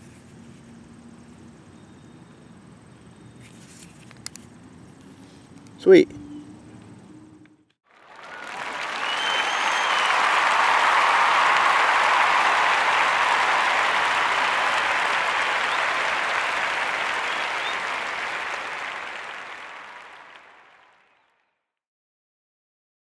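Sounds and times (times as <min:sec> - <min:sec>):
crowd applause: 0:07.9 - 0:21.3
whistle: 0:08.1 - 0:20.4.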